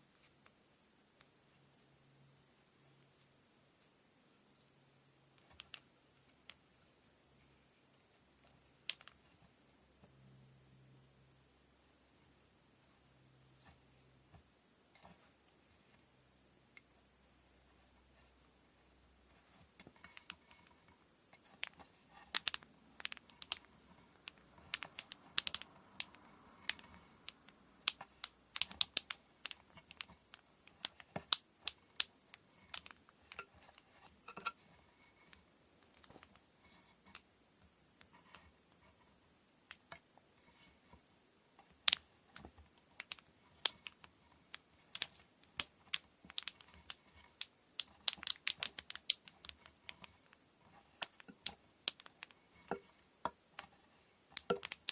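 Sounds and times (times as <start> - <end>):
light clicks and taps: 41.6 - 54.9
small objects set down: 54.3 - 54.9.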